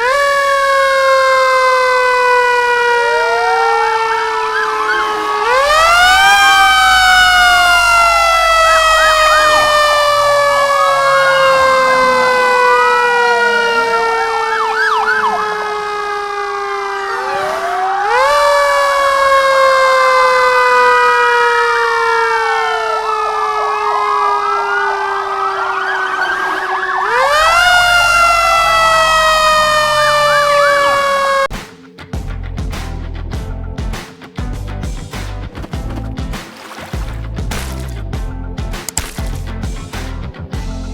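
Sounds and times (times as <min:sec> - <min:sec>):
fire truck siren wailing: 0:00.0 - 0:31.5
fast rising and falling wail: 0:00.6 - 0:31.5
music: 0:31.5 - 0:40.9.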